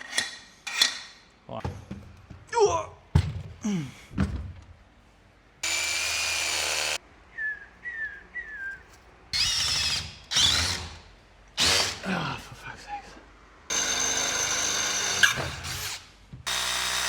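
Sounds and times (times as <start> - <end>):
knocks and clatter on brackets: 1.6 - 4.8
power drill running: 5.6 - 7.0, 9.4 - 11.0, 11.6 - 12.0, 13.7 - 17.0.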